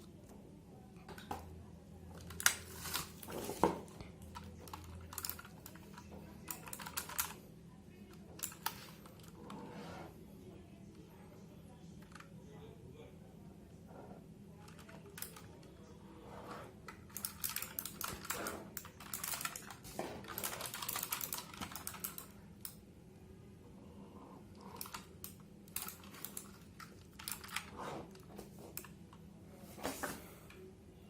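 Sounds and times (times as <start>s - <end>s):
mechanical keyboard typing: 4.2s - 7.4s, 17.0s - 22.8s, 24.6s - 27.7s.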